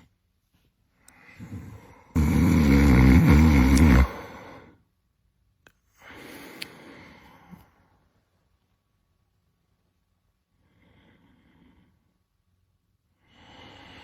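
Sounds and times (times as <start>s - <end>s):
quiet breath: 0.0s - 2.2s, 4.0s - 5.1s, 5.7s - 8.6s, 9.9s - 14.0s
person snoring: 1.2s - 4.8s.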